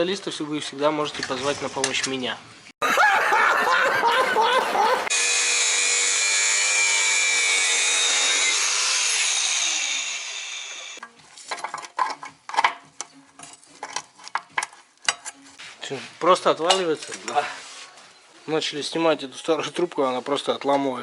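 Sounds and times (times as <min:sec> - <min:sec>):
angle grinder cutting metal: 0:05.1 - 0:11.0.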